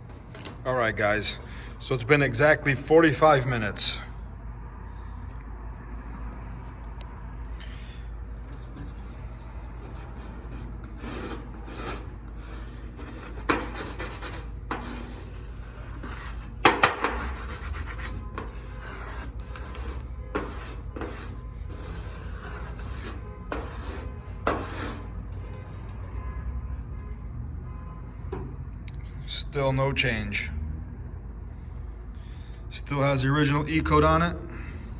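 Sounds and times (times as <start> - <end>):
scraping on painted car panel: 7.8 - 26.3.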